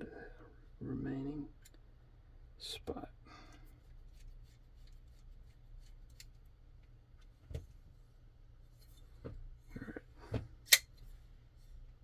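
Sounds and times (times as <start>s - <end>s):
small screw clicks and rubbing: 4.0s - 6.5s.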